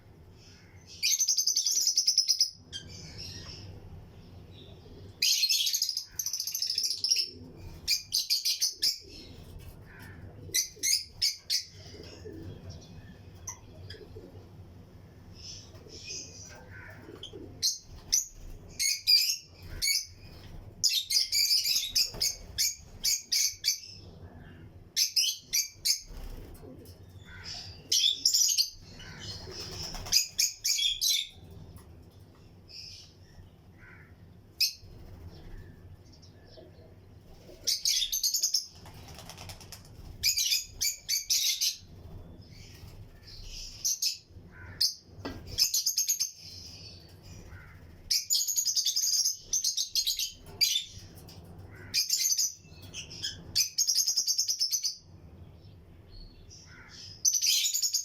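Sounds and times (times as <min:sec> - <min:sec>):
lovebirds chirping: 0:15.3 - 0:31.6, 0:32.2 - 0:55.0.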